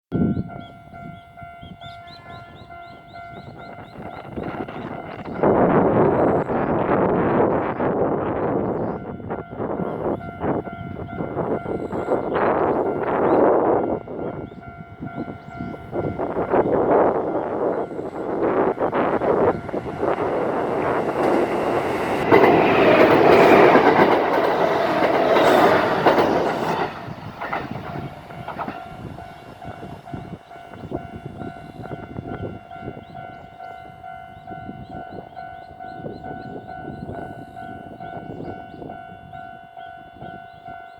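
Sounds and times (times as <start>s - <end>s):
crossing warning bell ringing: 0.2s - 40.9s
train wheel clatter: 14.4s - 31.4s.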